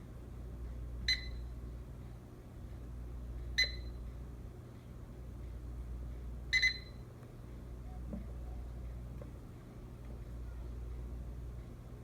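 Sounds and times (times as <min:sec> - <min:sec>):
microwave beeping: 0:01.0 - 0:01.6, 0:03.5 - 0:04.0, 0:06.5 - 0:07.1.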